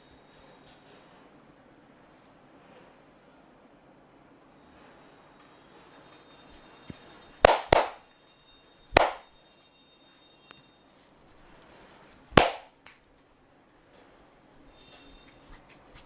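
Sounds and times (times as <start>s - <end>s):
hand slapping body: 7.5s - 8.0s, 9.0s - 9.2s, 12.4s - 13.0s.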